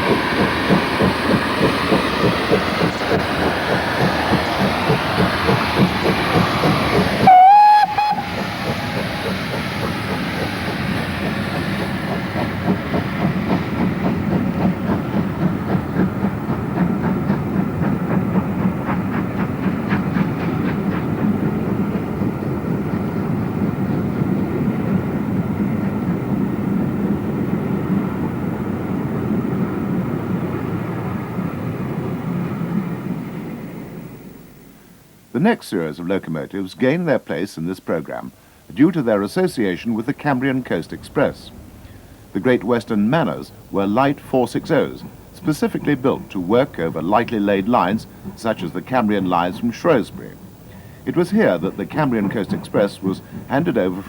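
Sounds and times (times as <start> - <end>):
rail clatter: 0.0 - 27.4, 42.4 - 54.0
steam locomotive exhaust beats: 0.0 - 35.2, 38.3 - 54.0
steam locomotive whistle: 7.2 - 9.5.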